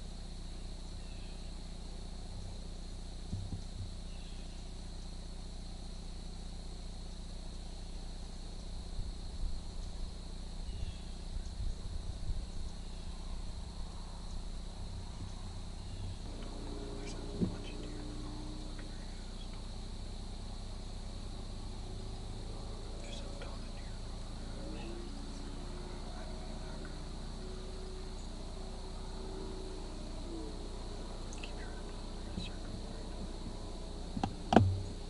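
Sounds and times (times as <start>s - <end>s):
insect chorus trilling: 0.0s - 35.0s
soft low bumps: 3.2s - 4.1s, 11.3s - 35.0s
short knock: 34.2s - 34.8s.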